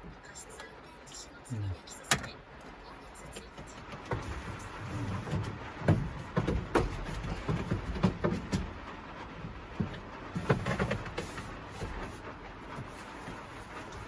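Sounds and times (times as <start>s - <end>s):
knocks and thumps: 3.6s - 8.8s.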